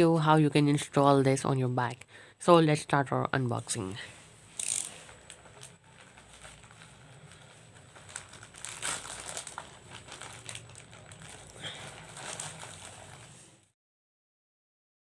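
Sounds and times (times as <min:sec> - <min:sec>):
packaging crinkling and rustling: 0:04.6 - 0:13.7.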